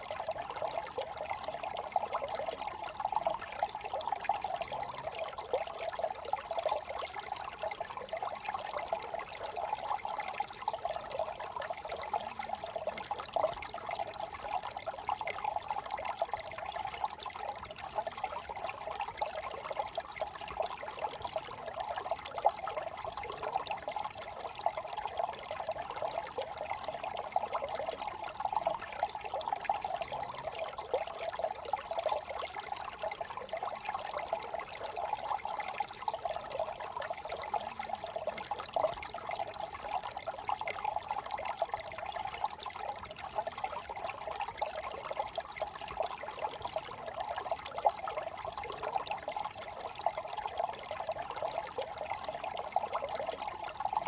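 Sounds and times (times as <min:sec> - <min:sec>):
brook trickling and gurgling: 0:00.0 - 0:54.0.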